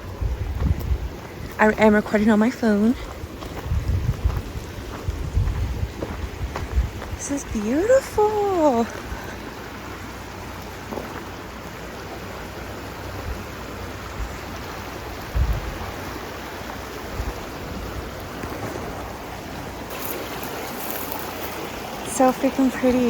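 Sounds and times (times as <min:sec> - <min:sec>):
mountain stream rushing: 0:00.0 - 0:23.0.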